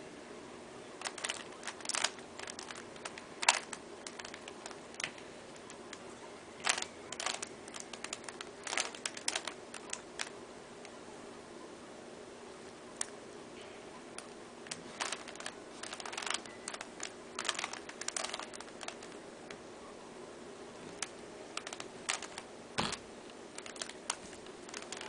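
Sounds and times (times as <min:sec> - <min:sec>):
plastic puzzle cube clicking: 0:01.0 - 0:05.8, 0:06.6 - 0:10.3, 0:15.0 - 0:19.2, 0:20.9 - 0:23.0, 0:23.6 - 0:25.0.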